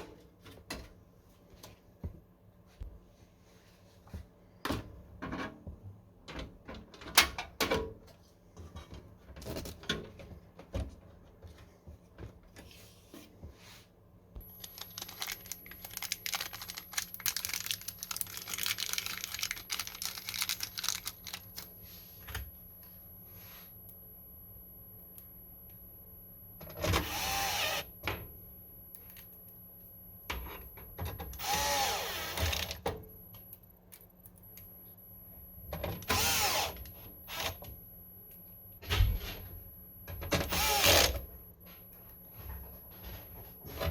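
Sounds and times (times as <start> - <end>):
crackling rustle of packaging: 14.4 - 22.3.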